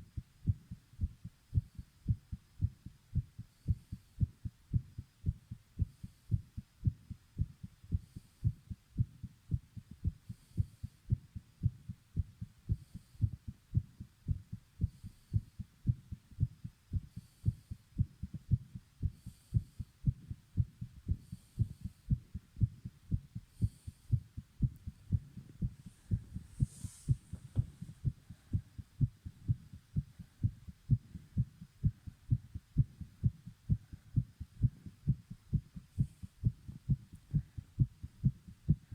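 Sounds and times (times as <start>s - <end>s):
fast pounding heartbeat: 0.0s - 38.9s.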